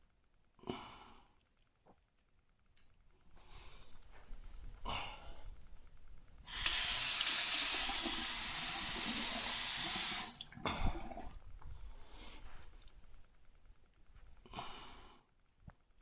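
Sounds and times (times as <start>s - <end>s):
faucet running into sink: 6.5s - 10.5s.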